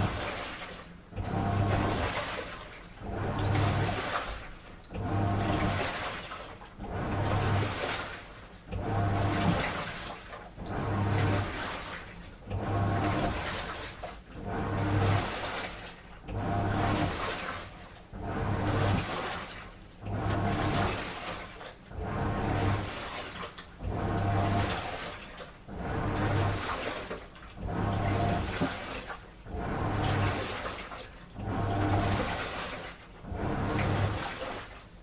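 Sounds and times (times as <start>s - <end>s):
washing machine drum turning: 0.0s - 34.8s
water and laundry sloshing: 0.0s - 35.0s.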